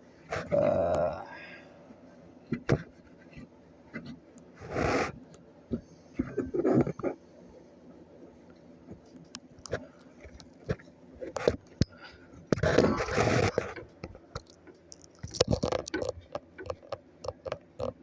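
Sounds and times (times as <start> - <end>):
rubbing on circuit board: 2.6 - 5.3, 6.2 - 7.2, 12.5 - 14.2
clicks and taps on circuit board: 13.7 - 18.0.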